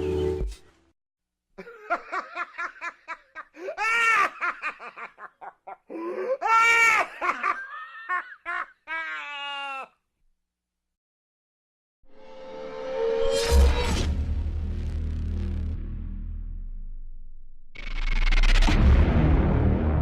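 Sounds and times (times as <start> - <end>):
high-pitched shrieks of laughter: 1.6 - 10.0
person laughing hysterically: 1.6 - 10.0.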